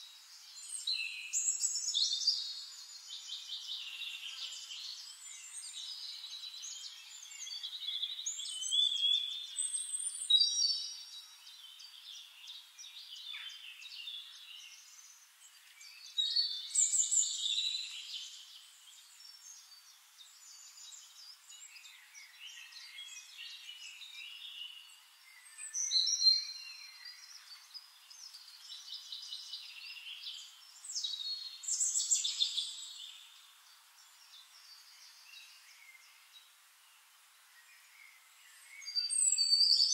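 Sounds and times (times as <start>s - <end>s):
birds chirping and whistling: 37.9s - 39.9s.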